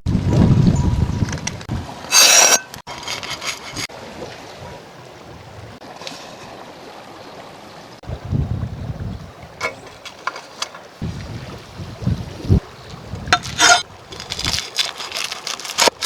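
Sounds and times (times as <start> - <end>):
wind rumbling on microphone: 0.0 - 2.1, 3.2 - 5.8, 8.0 - 16.0
stream water running: 1.7 - 16.0.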